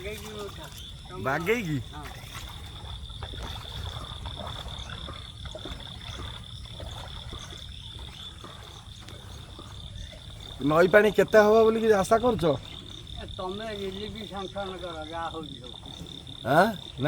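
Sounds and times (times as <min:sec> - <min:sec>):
frogs croaking: 0:00.0 - 0:17.0.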